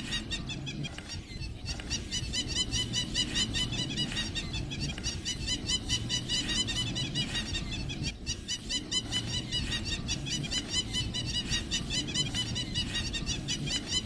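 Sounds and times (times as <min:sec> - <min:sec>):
chorus of high animal calls: 0:00.0 - 0:14.0
steady low rumble: 0:00.0 - 0:14.0.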